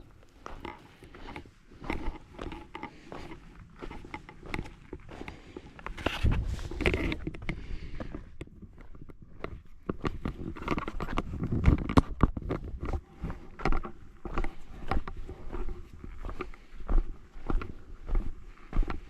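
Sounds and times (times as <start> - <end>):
rustling in dry brush: 6.0 - 7.0.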